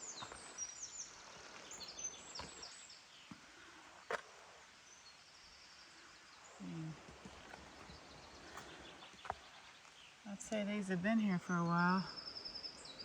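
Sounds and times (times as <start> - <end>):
outdoor background hiss: 0.0 - 13.0
birds chirping: 4.9 - 13.0.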